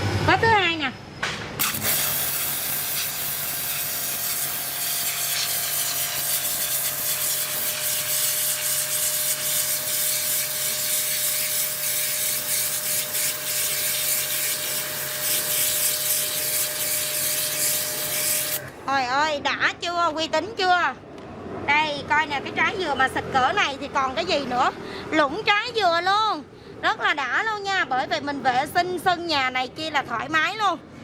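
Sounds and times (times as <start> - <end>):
water spray hissing: 1.6 - 18.7
pressure washer motor hum: 1.6 - 18.8.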